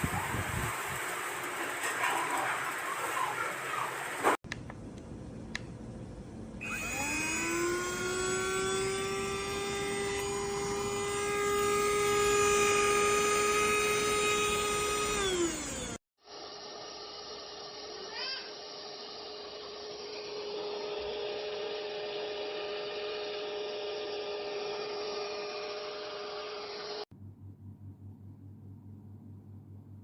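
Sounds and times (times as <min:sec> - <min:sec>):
click: 0:04.5 - 0:05.7
vacuum motor whine: 0:06.6 - 0:27.0.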